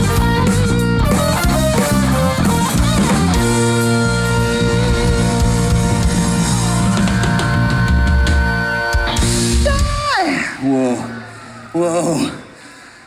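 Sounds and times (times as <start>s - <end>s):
bass guitar: 0.0s - 10.1s
electric guitar: 0.0s - 10.1s
drums: 0.0s - 11.4s.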